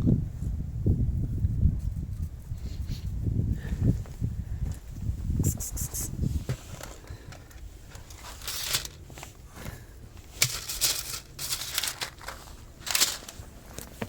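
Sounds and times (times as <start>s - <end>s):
plastic packaging crinkling: 10.4s - 14.0s.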